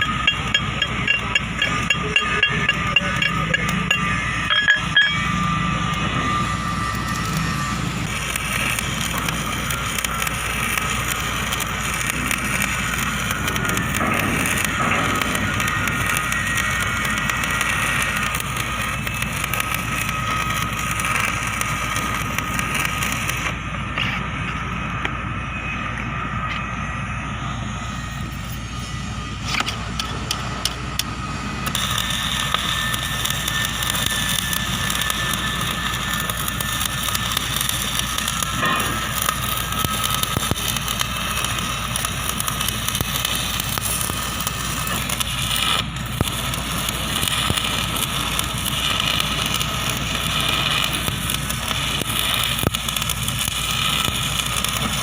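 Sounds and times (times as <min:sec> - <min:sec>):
constant low hum: 0:00.0 - 0:55.0
welding arc crackling and hissing: 0:00.0 - 0:55.0.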